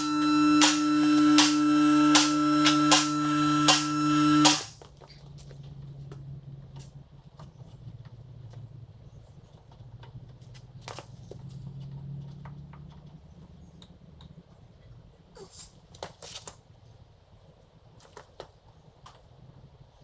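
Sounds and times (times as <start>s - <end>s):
steady low hum: 0.0s - 4.8s.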